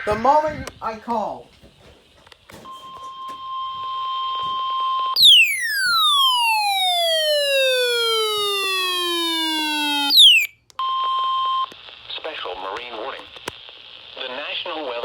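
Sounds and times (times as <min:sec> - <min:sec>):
steady warning beep: 0:02.7 - 0:11.7
falling whistle-like glide: 0:05.2 - 0:10.5
radio hiss: 0:11.8 - 0:15.0.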